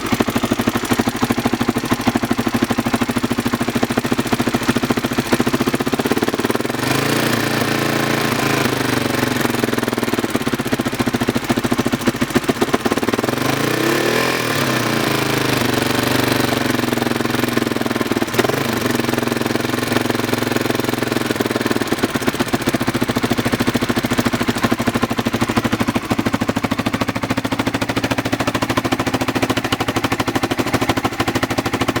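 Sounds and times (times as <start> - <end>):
engine ticking clatter: 0.0 - 32.0
motorcycle engine idling: 0.0 - 32.0.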